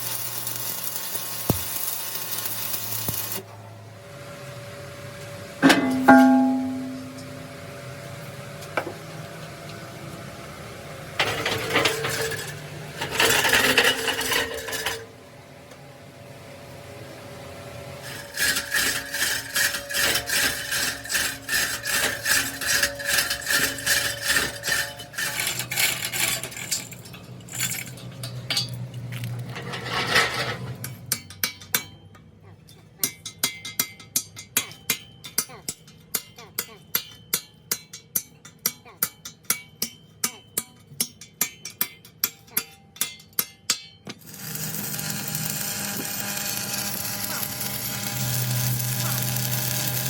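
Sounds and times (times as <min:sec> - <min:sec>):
metal clanks: 0:05.6 - 0:07.5, 0:11.2 - 0:15.1, 0:18.4 - 0:36.4
metal-on-metal strokes: 0:05.6 - 0:07.6, 0:18.0 - 0:28.9
metallic ringing tone: 0:05.6 - 0:07.7.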